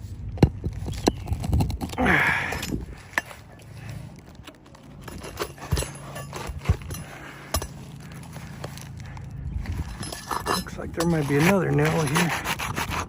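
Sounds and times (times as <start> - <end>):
scrape on roof shingles: 2.8 - 13.0.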